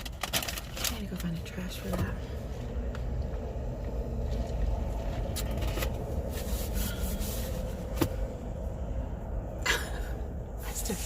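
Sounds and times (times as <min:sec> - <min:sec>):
steady low rumble: 0:00.0 - 0:11.0
rustling and scraping of handling: 0:04.2 - 0:08.3.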